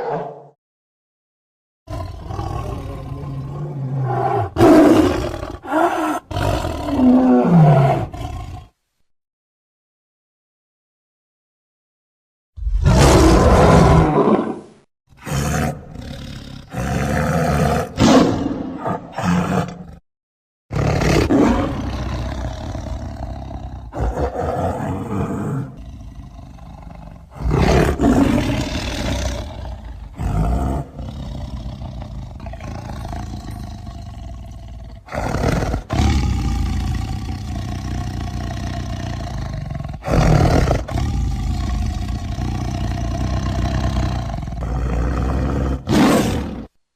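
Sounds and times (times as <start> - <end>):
monster roars and growls: 0.0 - 0.6, 12.6 - 19.8, 20.7 - 46.7.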